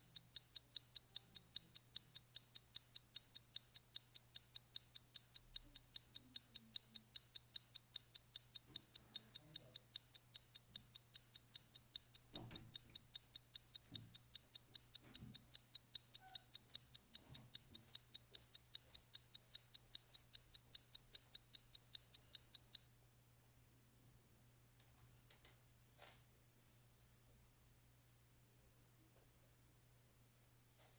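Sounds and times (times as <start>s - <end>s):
fast high clock ticking: 0.0s - 22.9s.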